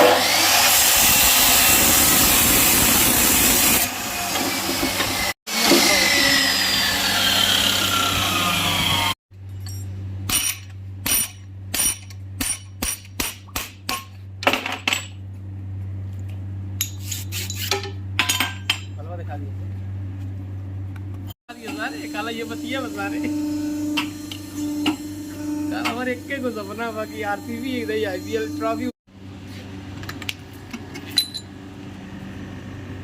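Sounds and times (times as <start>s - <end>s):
power tool running harshly: 0.0s - 9.2s, 21.5s - 28.9s.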